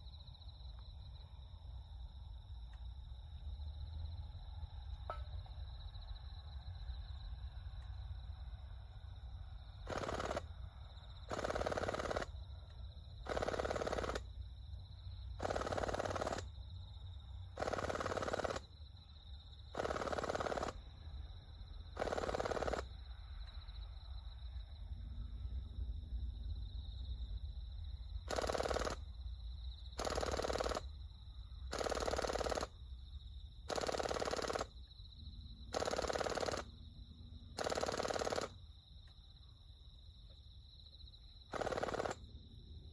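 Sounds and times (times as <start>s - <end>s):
distant airsoft gun bursts: 9.8s - 10.6s, 11.2s - 12.4s, 13.2s - 14.3s, 15.4s - 16.6s, 17.6s - 18.7s, 19.7s - 20.8s, 21.9s - 23.0s, 28.2s - 29.1s, 30.0s - 30.9s, 31.7s - 32.8s, 33.7s - 34.8s, 35.7s - 36.8s, 37.6s - 38.6s, 41.5s - 42.3s.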